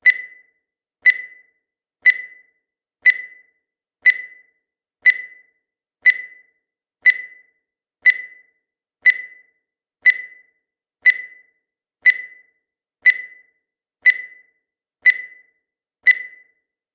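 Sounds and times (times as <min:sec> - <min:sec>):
short high beeps: 0:16.1 - 0:16.5.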